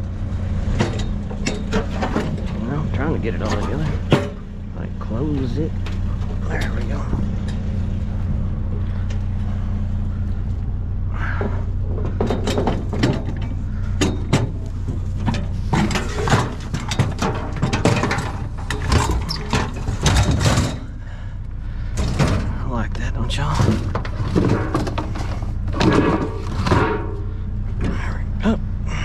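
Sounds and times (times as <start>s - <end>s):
steady low hum: 0.0s - 29.0s
scrap items clattering: 11.4s - 21.0s, 23.4s - 27.2s.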